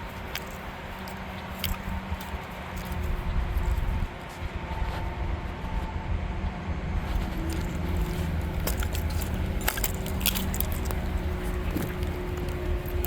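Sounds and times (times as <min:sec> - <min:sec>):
sharp cracks and snaps: 0:00.0 - 0:04.1
diesel engine running: 0:06.7 - 0:13.0.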